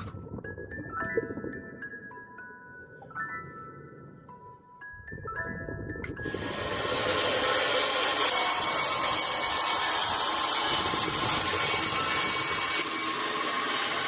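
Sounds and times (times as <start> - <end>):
power tool grinding steel: 6.3 - 14.0.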